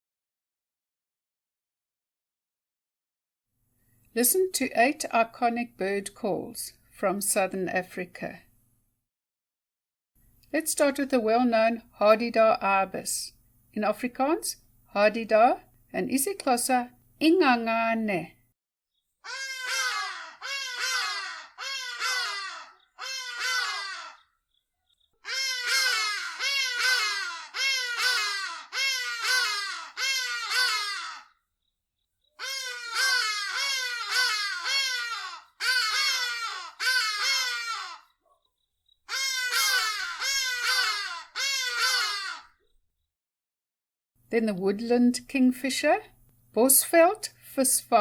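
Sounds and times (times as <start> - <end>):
ibis harsh calls: 19.2 - 31.5, 32.3 - 42.7.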